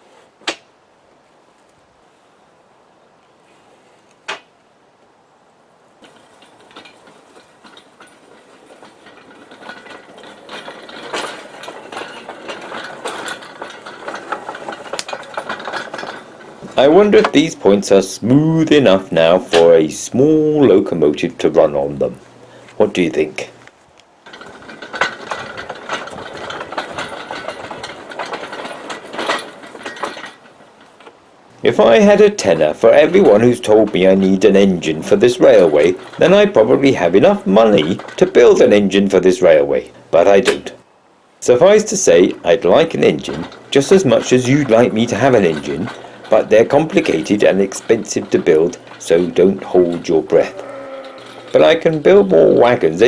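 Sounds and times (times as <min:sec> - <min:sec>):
rail wagon wheels clattering: 0:05.6 - 0:53.0
vehicle rattling on track: 0:06.0 - 0:22.2, 0:24.2 - 0:40.8, 0:41.4 - 0:53.0
metallic clicks and knocks: 0:06.0 - 0:53.0.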